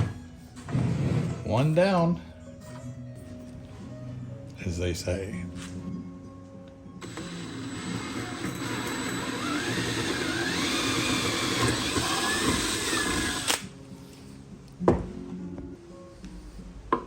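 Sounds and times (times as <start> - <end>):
power drill whining: 7.0 - 13.7.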